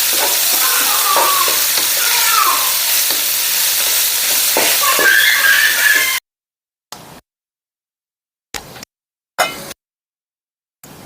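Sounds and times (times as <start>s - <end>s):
food sizzling in a pan: 0.0s - 6.2s
stirring scraping against pan: 0.0s - 6.2s.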